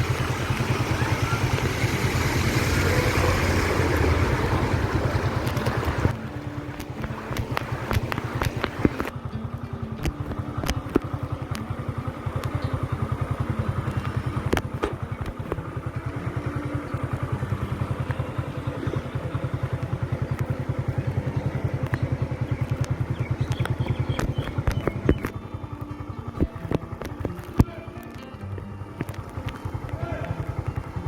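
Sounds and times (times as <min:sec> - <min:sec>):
small engine running: 0:00.0 - 0:31.0
sharp clicks: 0:05.2 - 0:13.0, 0:18.9 - 0:30.9.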